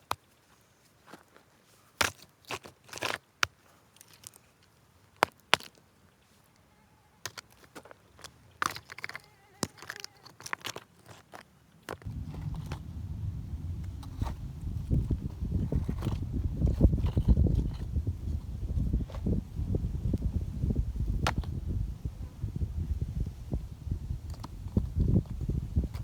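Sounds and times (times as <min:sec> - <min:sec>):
low rumble: 0:12.1 - 0:26.0.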